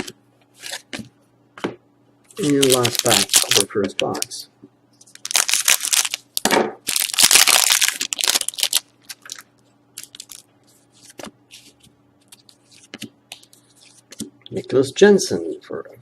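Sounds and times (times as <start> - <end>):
wrapper tearing and crinkling: 2.4 - 4.3, 5.1 - 11.2.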